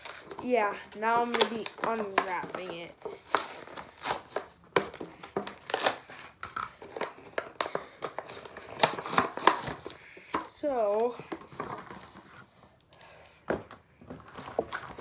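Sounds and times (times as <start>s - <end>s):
packaging crinkling and tearing: 0.0s - 10.2s, 14.0s - 15.0s.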